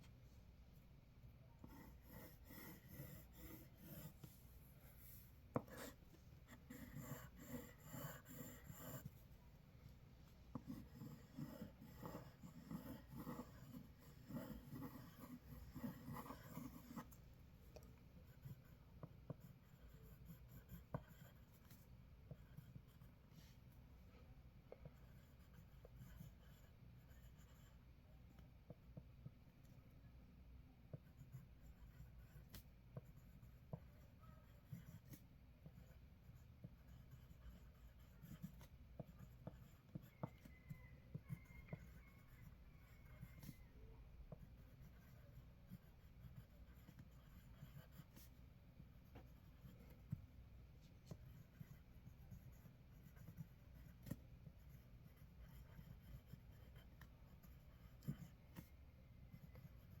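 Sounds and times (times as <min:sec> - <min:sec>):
pencil scribbling on paper: 0:01.6 - 0:09.3, 0:10.5 - 0:17.2, 0:18.2 - 0:23.6, 0:24.8 - 0:27.8, 0:30.9 - 0:50.2, 0:50.8 - 1:00.0.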